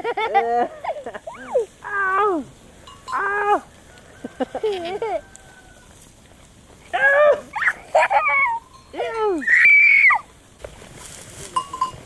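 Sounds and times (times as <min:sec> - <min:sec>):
high animal cries: 0:06.9 - 0:10.3.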